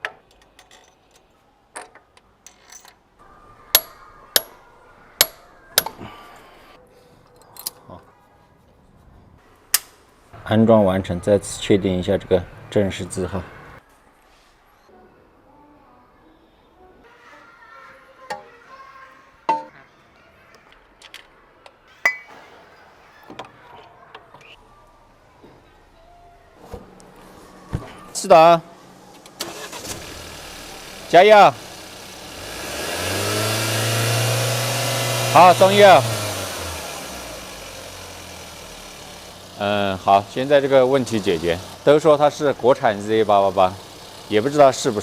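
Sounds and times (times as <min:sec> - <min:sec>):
metal tools clinking: 0:02.4 - 0:03.0, 0:22.0 - 0:22.6
loud sharp strikes: 0:22.1 - 0:22.6.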